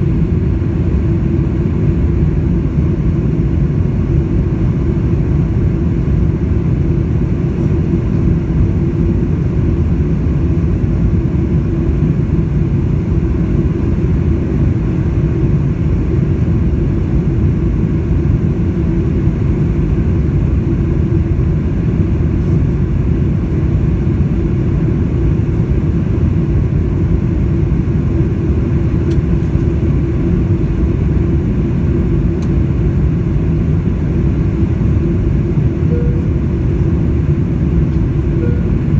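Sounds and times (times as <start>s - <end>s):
faint steady hum: 0.0s - 38.9s
jet engine cabin rumble: 0.0s - 38.9s.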